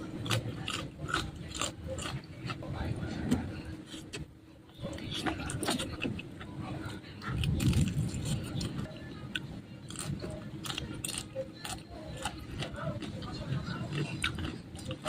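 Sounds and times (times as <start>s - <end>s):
chewing and mouth smacking: 0.2s - 2.6s, 9.9s - 15.0s.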